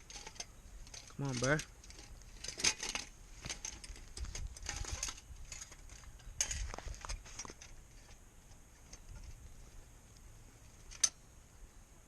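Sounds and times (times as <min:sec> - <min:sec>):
wire cage trap clicking and rattling: 0:00.0 - 0:08.2, 0:10.8 - 0:11.2.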